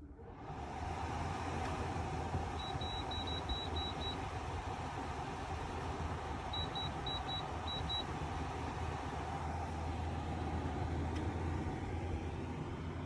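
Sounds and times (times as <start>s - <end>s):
air conditioner running: 0.0s - 13.0s
quick high beeps: 2.6s - 4.2s, 6.6s - 8.0s.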